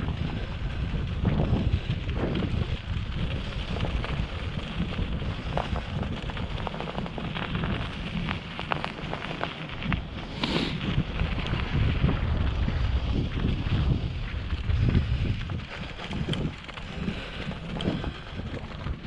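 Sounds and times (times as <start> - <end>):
sharp clicks and crackles: 0.0 - 19.0
wind buffeting microphone: 0.0 - 19.0.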